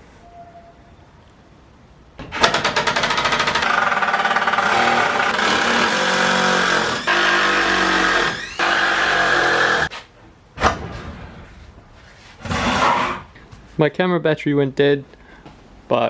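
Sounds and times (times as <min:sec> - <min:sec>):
power driver driving screws: 0:02.4 - 0:09.9.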